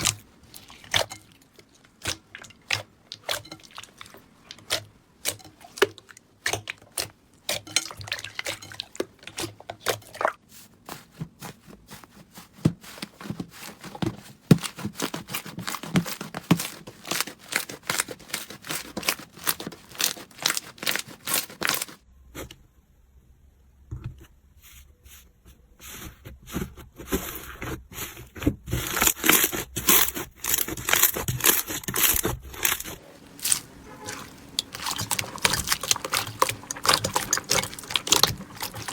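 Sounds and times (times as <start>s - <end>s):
slime crackling and popping: 14.6s - 22.0s, 28.9s - 38.9s.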